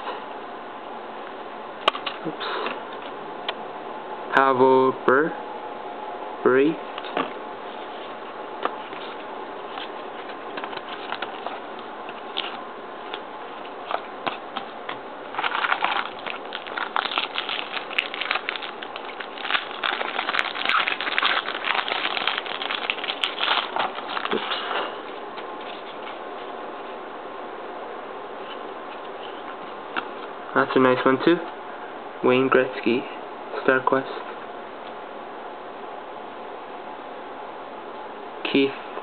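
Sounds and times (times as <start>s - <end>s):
steady background hiss: 0.0s - 39.0s
plastic wrapper crinkling and tearing: 15.3s - 24.9s.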